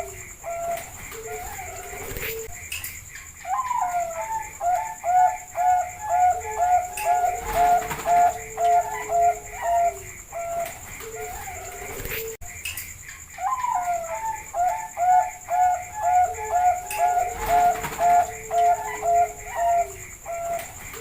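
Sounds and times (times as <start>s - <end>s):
lower dove coos: 0.0s - 2.5s, 3.4s - 12.4s, 13.4s - 21.0s
dove repeated short coos: 3.5s - 12.4s, 13.4s - 21.0s.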